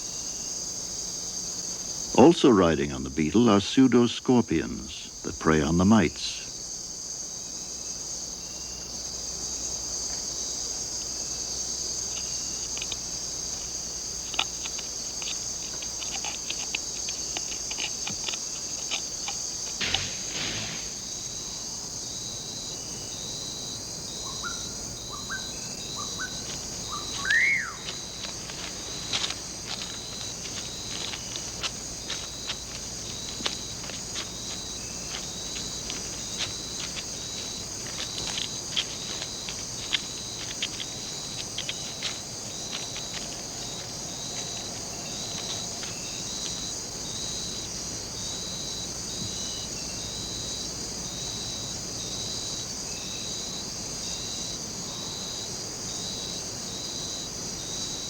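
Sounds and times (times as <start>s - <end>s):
insect chorus drone: 0.0s - 58.0s
insect clicks: 9.9s - 21.6s, 25.0s - 47.8s
rising chirps and whistle: 27.0s - 27.8s.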